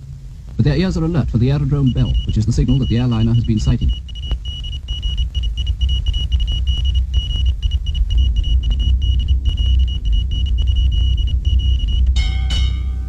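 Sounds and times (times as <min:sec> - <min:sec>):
heavy low rumble: 0:00.0 - 0:13.0
alarm bell ringing: 0:12.1 - 0:13.0.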